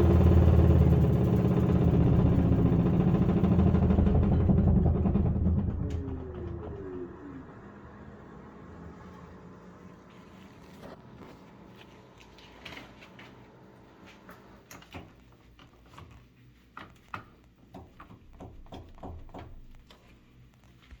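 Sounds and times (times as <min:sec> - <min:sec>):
washing machine hum: 0:00.0 - 0:17.0.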